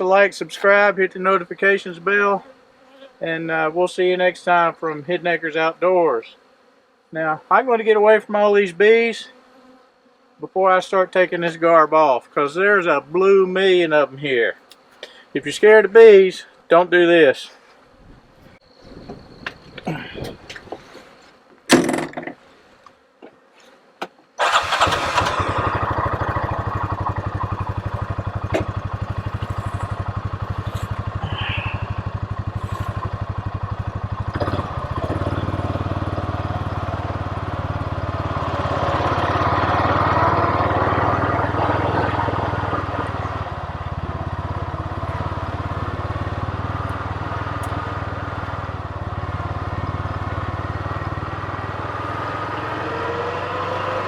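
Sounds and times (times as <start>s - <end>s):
engine running: 24.4s - 54.0s.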